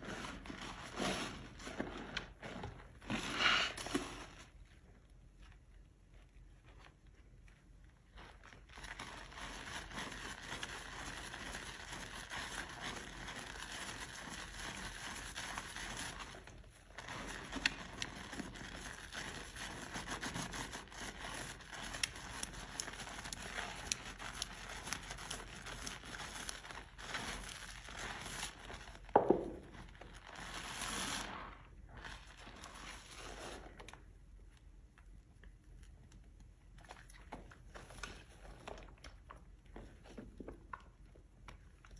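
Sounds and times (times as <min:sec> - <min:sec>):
wet soap scraping: 0:00.0 - 0:04.6.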